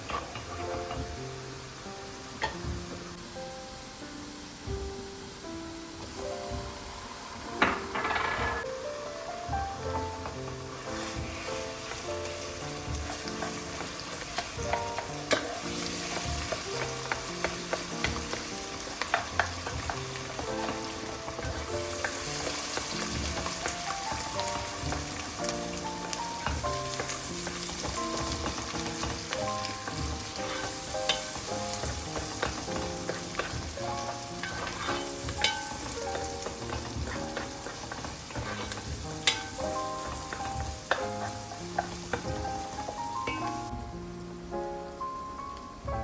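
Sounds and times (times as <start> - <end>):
background music: 0.0 - 46.0
food sizzling in a pan: 0.0 - 46.0
utensil clicking against pan: 13.2 - 24.2, 26.0 - 43.5.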